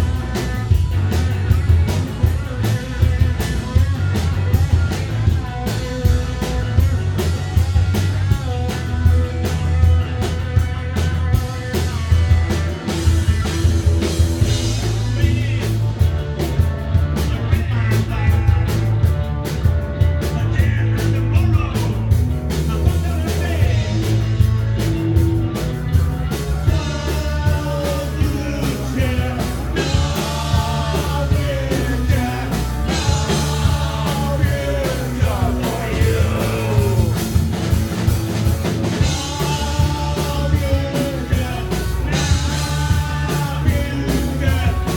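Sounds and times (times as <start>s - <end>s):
punk rock band playing: 0.0s - 44.9s
person singing: 26.8s - 37.4s, 39.0s - 44.9s.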